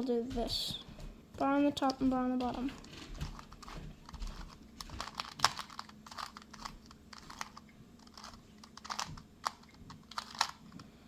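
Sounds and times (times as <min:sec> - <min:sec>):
plastic puzzle cube clicking: 0:04.4 - 0:10.7.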